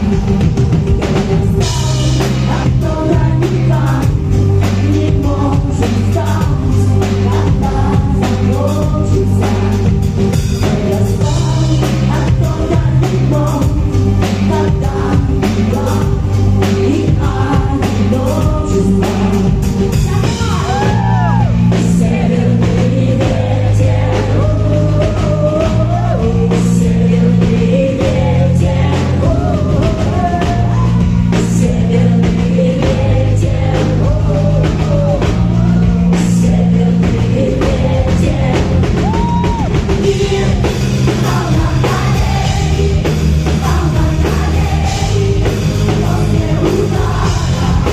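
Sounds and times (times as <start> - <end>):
bass notes: 0.0 - 47.9
guitar: 0.0 - 47.9
person singing: 0.0 - 47.9
drum hits: 26.8 - 47.9.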